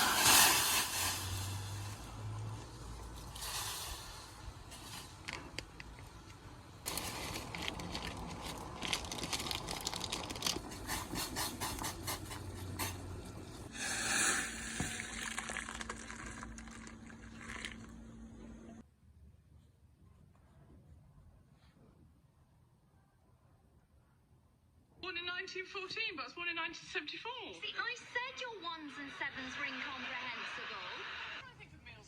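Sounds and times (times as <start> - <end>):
wood fire crackling: 0.0 - 17.9.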